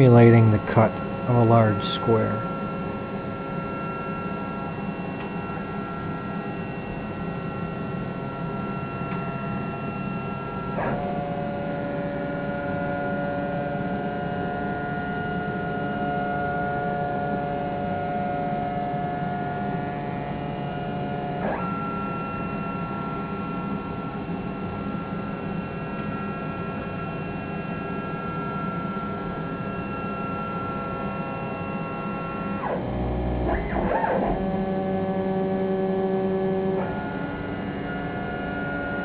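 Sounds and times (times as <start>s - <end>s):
stepper motors whining: 28.3s - 39.0s.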